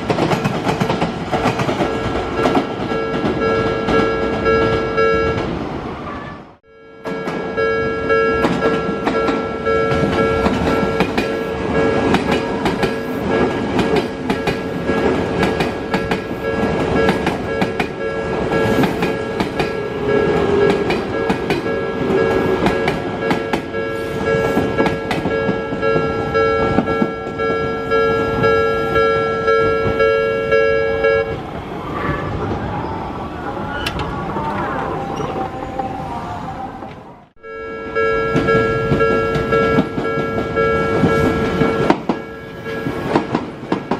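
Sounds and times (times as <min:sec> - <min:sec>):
level crossing bell ringing: 0:01.8 - 0:05.5, 0:06.7 - 0:31.4, 0:37.4 - 0:43.3
train wheels clattering over joints: 0:38.4 - 0:43.9.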